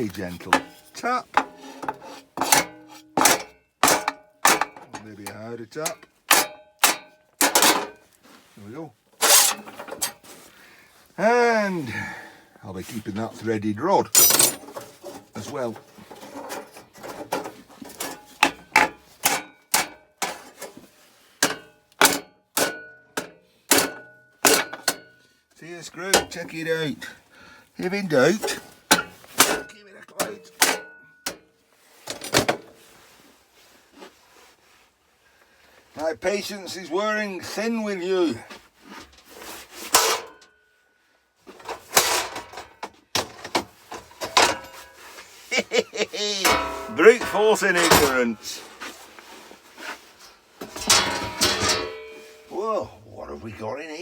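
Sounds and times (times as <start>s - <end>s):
hammer striking metal: 46.4s - 48.4s, 50.8s - 52.5s.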